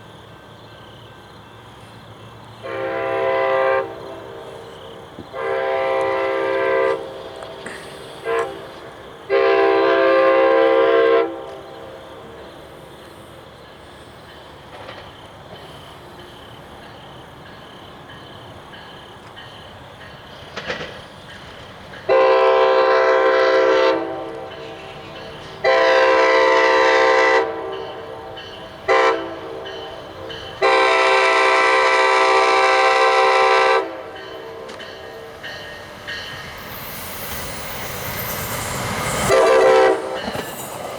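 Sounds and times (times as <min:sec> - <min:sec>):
low train rumble: 0:00.0 - 0:40.9
train air horn: 0:02.6 - 0:11.9, 0:22.1 - 0:35.3, 0:37.6 - 0:40.6.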